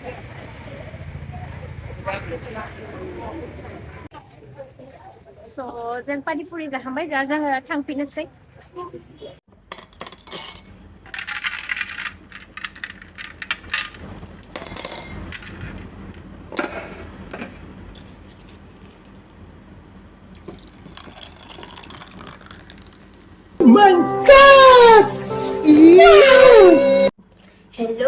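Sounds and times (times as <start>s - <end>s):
dishes and utensils clinking: 9.7s - 10.8s.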